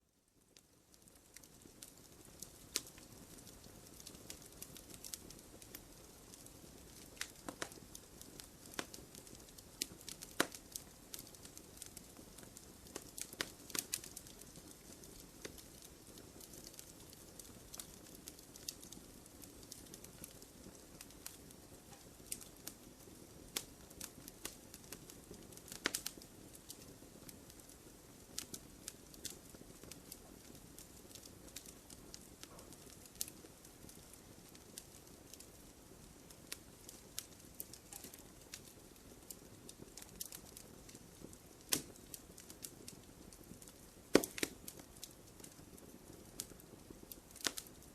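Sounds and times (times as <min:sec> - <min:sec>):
soft steady hiss: 0:00.0 - 0:47.9
campfire crackling and popping: 0:00.3 - 0:47.9.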